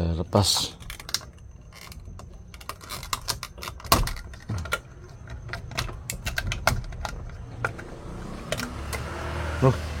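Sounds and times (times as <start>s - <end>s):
plastic and metal parts clicking: 0.4s - 7.9s.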